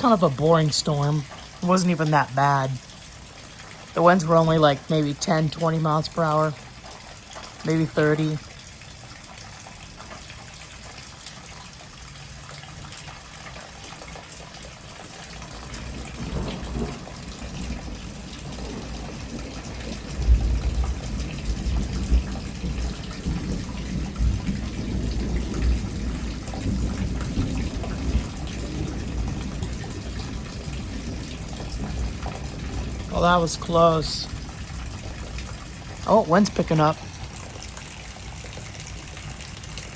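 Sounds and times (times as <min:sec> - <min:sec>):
steady rain falling: 0:00.0 - 0:39.9
deep thunder rumble: 0:15.6 - 0:37.4.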